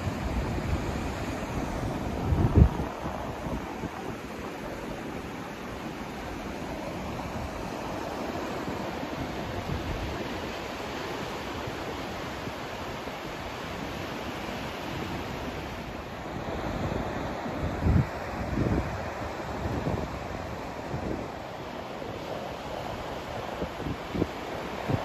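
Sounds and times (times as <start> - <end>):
steady rushing noise: 0.0 - 11.8.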